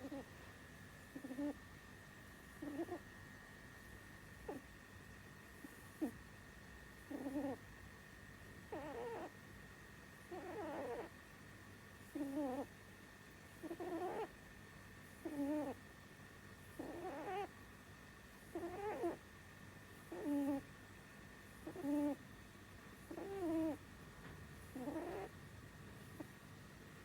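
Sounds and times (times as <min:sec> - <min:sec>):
rabbit snoring: 0:00.0 - 0:00.4, 0:01.0 - 0:04.8, 0:05.4 - 0:06.2, 0:06.9 - 0:11.3, 0:12.0 - 0:12.8, 0:13.4 - 0:14.4, 0:15.0 - 0:17.6, 0:18.2 - 0:20.8, 0:21.4 - 0:22.4, 0:23.0 - 0:27.0.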